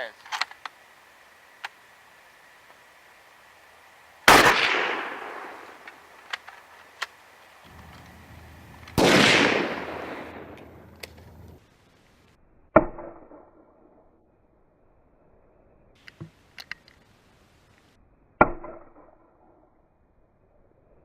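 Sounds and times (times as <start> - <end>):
rifle shots echoing: 4.3 - 6.4, 8.5 - 11.0
light clicks: 10.5 - 11.6.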